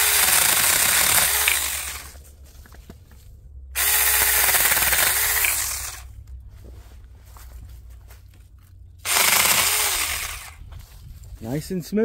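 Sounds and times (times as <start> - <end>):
mini chainsaw cutting branch: 0.0 - 2.2, 3.8 - 6.1, 9.0 - 10.6.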